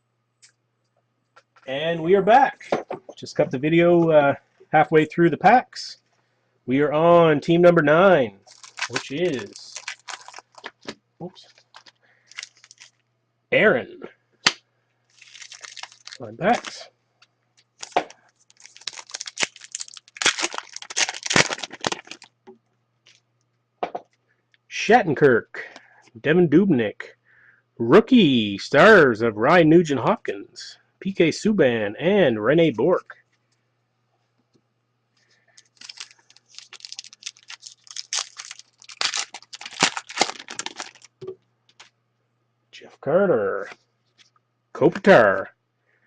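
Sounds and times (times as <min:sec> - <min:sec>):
foil wrappers crinkling and tearing: 0:08.4 - 0:13.0, 0:15.1 - 0:16.8, 0:17.6 - 0:22.4, 0:35.6 - 0:41.2.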